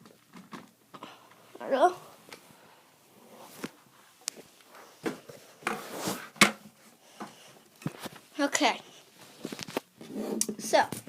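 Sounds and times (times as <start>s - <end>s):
rustling scrape: 3.2s - 10.4s.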